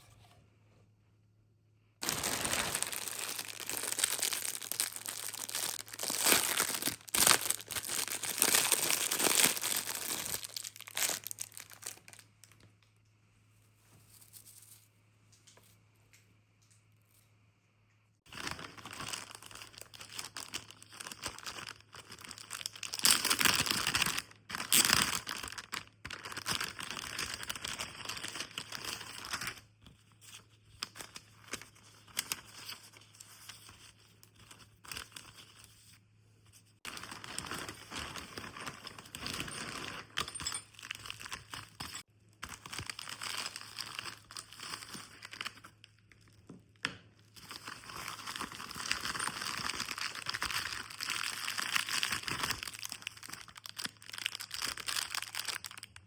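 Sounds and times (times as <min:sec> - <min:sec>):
packaging crinkling and tearing: 0:02.0 - 0:12.6, 0:18.3 - 0:29.6, 0:36.9 - 0:46.0, 0:47.4 - 0:56.0.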